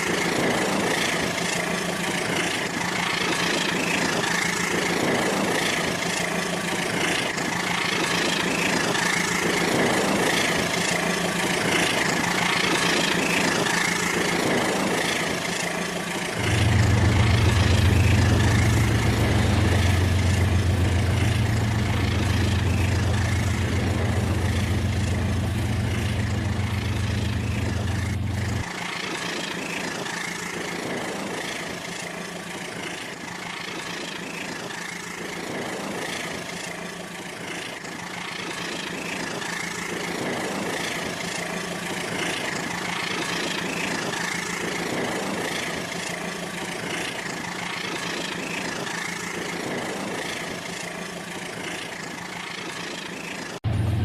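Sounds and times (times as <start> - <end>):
toy train running on track: 0.0 - 16.7, 28.6 - 53.6
low hum: 8.6 - 30.6, 45.9 - 54.0.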